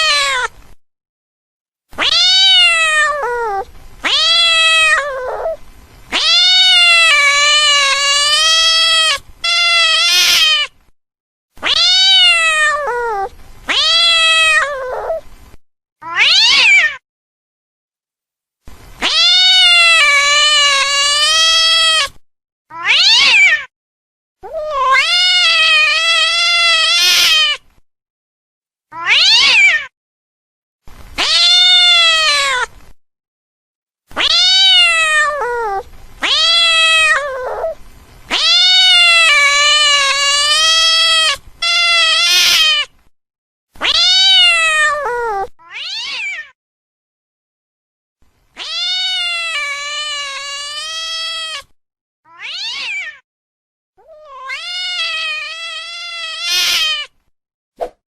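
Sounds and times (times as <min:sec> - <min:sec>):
angry cat yowling: 0:00.0 - 0:00.5, 0:02.0 - 0:10.8, 0:11.6 - 0:15.2, 0:16.0 - 0:17.0, 0:19.0 - 0:23.7, 0:24.4 - 0:27.6, 0:28.9 - 0:29.9, 0:31.2 - 0:32.7, 0:34.1 - 0:42.9, 0:43.8 - 0:46.6, 0:48.6 - 0:51.7, 0:52.3 - 0:53.2, 0:54.0 - 0:57.2.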